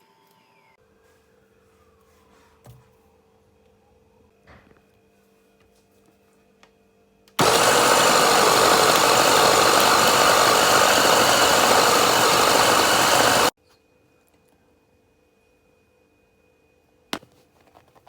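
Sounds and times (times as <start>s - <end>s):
food processor motor whirring: 7.4s - 13.5s.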